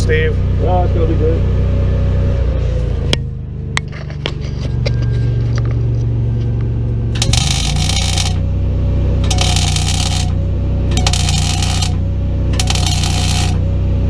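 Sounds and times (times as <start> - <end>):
low machine hum: 0.0 - 14.0
welding arc crackle: 7.2 - 8.5, 9.2 - 12.0, 12.6 - 13.7.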